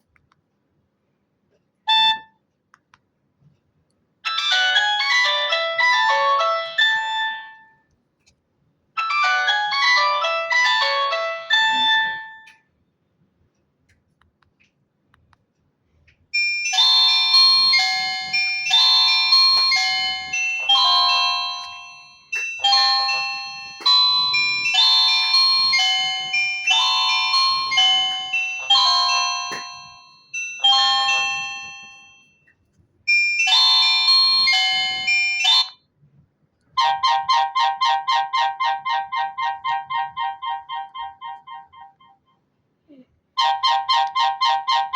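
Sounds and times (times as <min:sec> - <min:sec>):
electronic phone ringtone: 0:04.3 - 0:07.7, 0:09.0 - 0:12.5, 0:16.4 - 0:32.3, 0:33.1 - 0:35.8, 0:36.8 - 0:42.2, 0:43.4 - 0:44.9
repeating ringtone melody: 0:04.3 - 0:07.7, 0:09.0 - 0:12.5, 0:16.4 - 0:32.3, 0:33.1 - 0:35.8, 0:36.8 - 0:42.2, 0:43.4 - 0:44.9.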